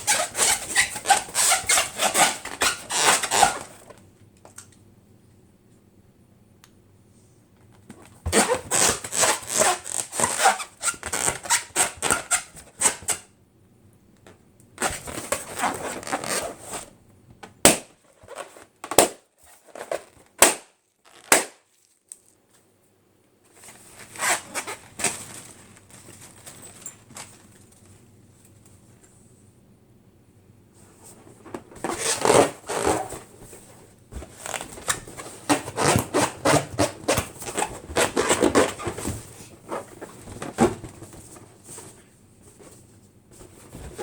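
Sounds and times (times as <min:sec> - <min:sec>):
balloons crackling: 0:08.3 - 0:13.1, 0:20.0 - 0:21.8, 0:31.6 - 0:42.0.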